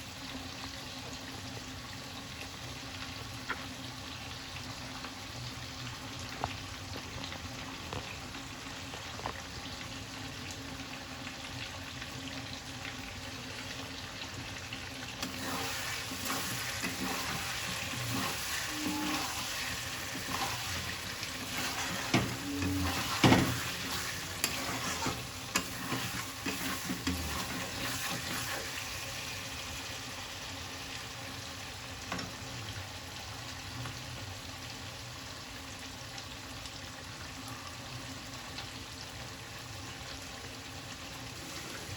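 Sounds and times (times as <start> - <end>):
chicken sizzling in a pan: 0.0 - 41.9
spoon knocking against pan: 21.6 - 24.7.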